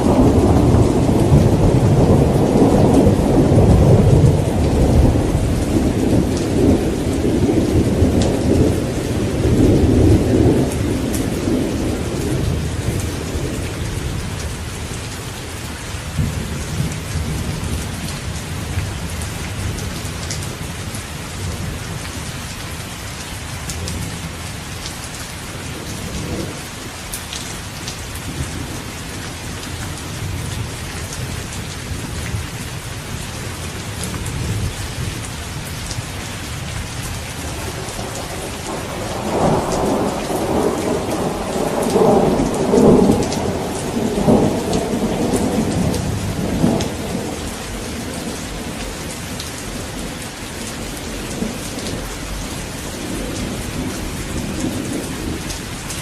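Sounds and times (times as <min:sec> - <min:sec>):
thunder rumbling: 0:00.0 - 0:15.0, 0:27.8 - 0:56.0
heavy rain falling: 0:00.0 - 0:56.0.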